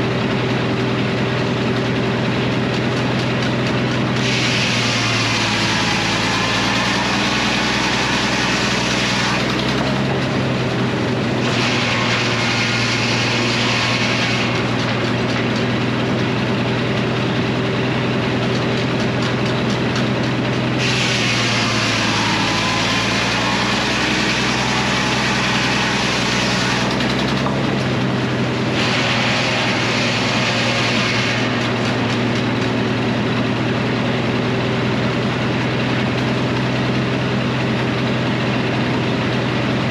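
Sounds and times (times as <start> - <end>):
engine droning: 0.0 - 39.9
saw blade cutting wood: 2.7 - 33.5.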